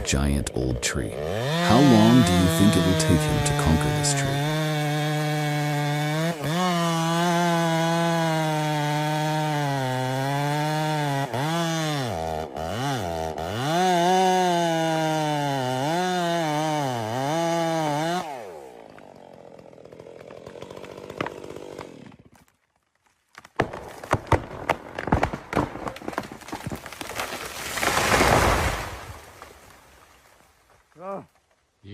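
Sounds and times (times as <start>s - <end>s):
chainsaw cutting wood: 0.6s - 22.5s, 23.4s - 30.4s
sharp cracks and knocks: 20.2s - 31.6s.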